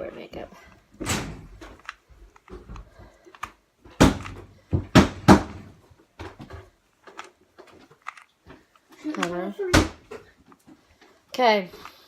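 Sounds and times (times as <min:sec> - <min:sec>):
plastic puzzle cube clicking: 0:01.7 - 0:04.4, 0:07.0 - 0:09.6
loud plastic clacks: 0:06.4 - 0:10.7.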